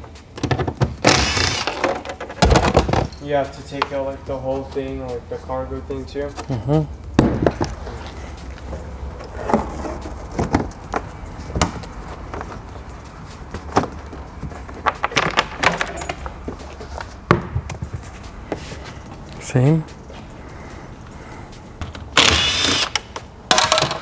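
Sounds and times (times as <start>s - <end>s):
tools and metal parts clanking: 0.0s - 3.9s, 7.4s - 12.6s, 13.6s - 18.4s, 22.8s - 24.0s
steady low hum: 3.4s - 14.9s.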